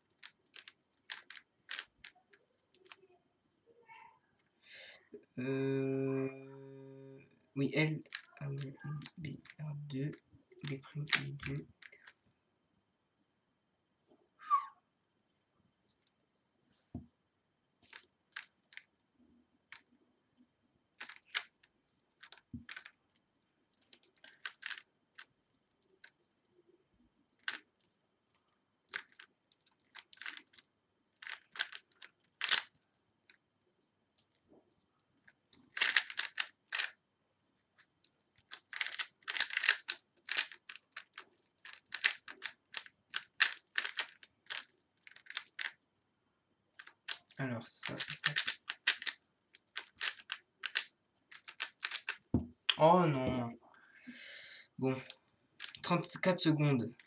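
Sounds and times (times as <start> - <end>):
plastic puzzle cube clicking: 0.0 - 3.1, 8.0 - 12.2, 17.8 - 18.9, 19.7 - 19.9, 20.9 - 26.2, 27.4 - 33.4, 35.2 - 37.0, 37.8 - 45.8, 46.8 - 52.4, 55.0 - 55.9.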